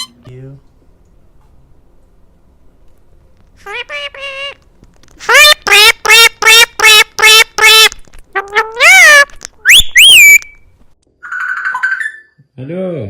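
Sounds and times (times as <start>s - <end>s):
parrot squawking: 3.6s - 4.6s, 5.2s - 10.6s
parrot whistling: 5.3s - 12.3s.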